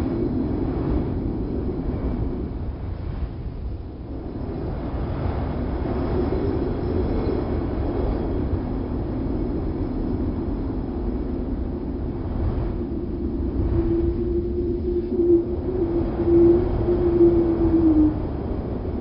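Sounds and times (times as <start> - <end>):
low rushing wind: 0.0 - 19.0.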